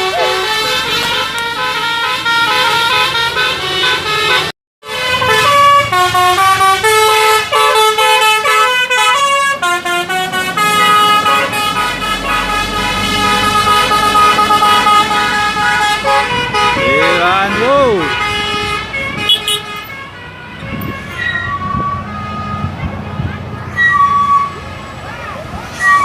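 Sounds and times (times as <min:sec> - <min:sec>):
multi-tone bus air horn melody: 0:00.0 - 0:24.6.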